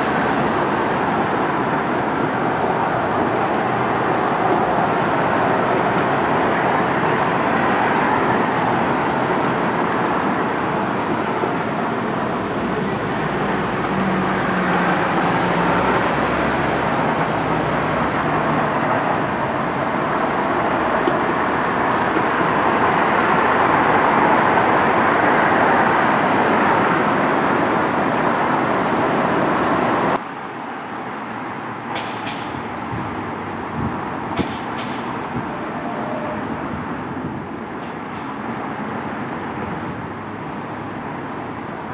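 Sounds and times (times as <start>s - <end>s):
road traffic noise: 0.0s - 41.9s
vehicle engine hum passing: 10.7s - 22.0s.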